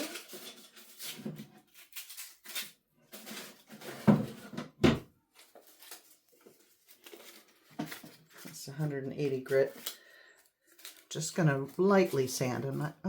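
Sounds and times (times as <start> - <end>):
light clatters and rustles: 5.4 - 8.6.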